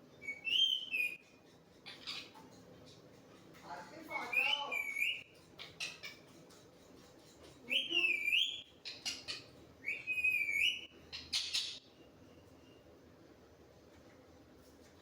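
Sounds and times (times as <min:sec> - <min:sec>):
parrot whistling: 0:00.2 - 0:01.2, 0:04.2 - 0:05.2, 0:09.8 - 0:11.9.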